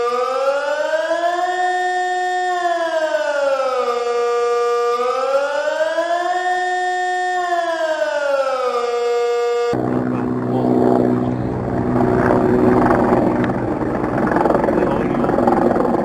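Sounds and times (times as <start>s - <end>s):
siren winding down: 0.0s - 15.9s
loud steady humming noise: 9.7s - 16.0s.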